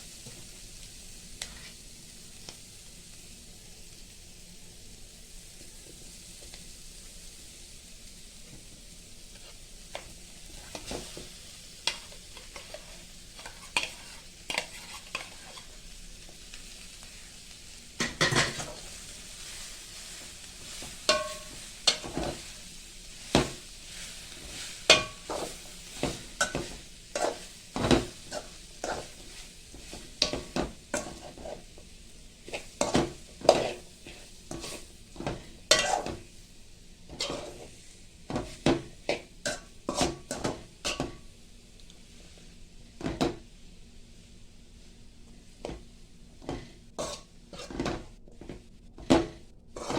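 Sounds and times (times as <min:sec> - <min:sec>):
food sizzling in hot oil: 0:00.0 - 0:49.9
metal spatula scraping a pan: 0:01.4 - 0:01.8, 0:09.3 - 0:15.9, 0:18.0 - 0:31.8, 0:32.4 - 0:36.3, 0:37.1 - 0:41.2, 0:46.4 - 0:49.9.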